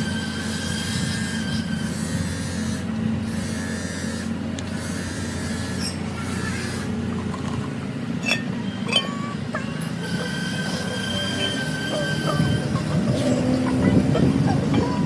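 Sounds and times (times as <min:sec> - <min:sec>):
thin high squeal: 0:08.2 - 0:13.4.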